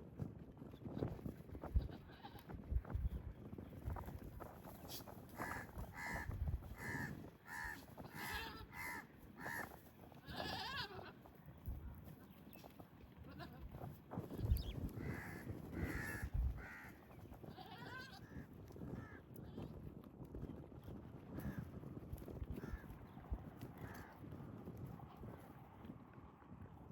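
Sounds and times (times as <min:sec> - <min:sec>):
goats bleating: 0:07.7 - 0:09.6, 0:10.2 - 0:11.2, 0:17.5 - 0:18.3.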